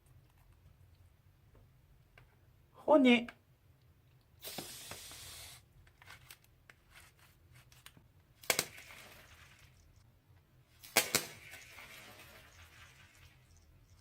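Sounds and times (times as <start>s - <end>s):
short hiss: 4.4s - 5.7s.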